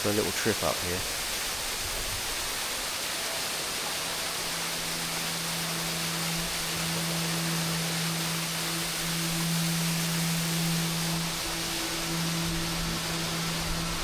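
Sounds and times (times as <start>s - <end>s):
waterfall rushing: 0.0s - 14.0s
low held tone: 3.1s - 14.0s.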